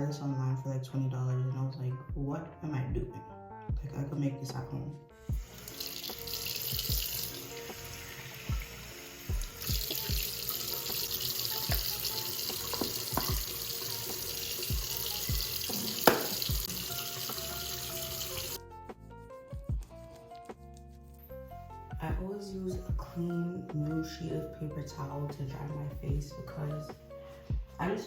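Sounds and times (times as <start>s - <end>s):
sink tap running: 5.3s - 18.6s
water splashing: 5.4s - 18.6s.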